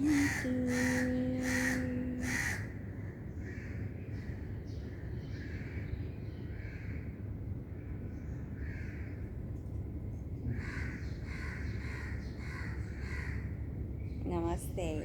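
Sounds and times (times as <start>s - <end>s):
crows cawing: 0.0s - 2.7s, 8.6s - 9.2s, 10.5s - 13.6s
steady low rumble: 0.0s - 5.0s.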